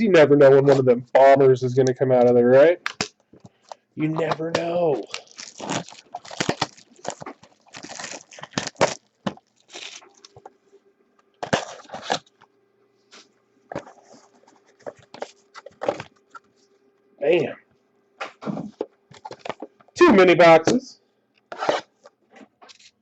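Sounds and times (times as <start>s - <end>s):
plastic shrink wrap crinkling: 3.6s - 10.5s
cardboard scraping: 21.5s - 21.9s.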